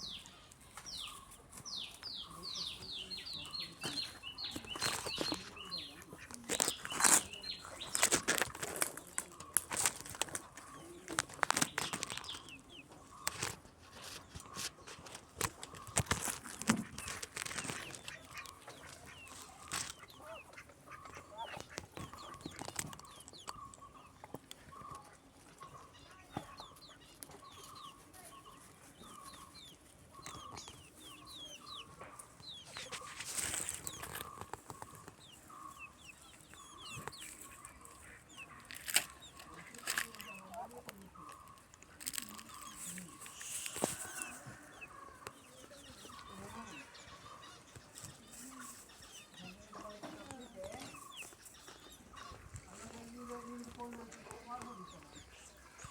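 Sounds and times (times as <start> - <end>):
chickens clucking: 0.0 - 55.9.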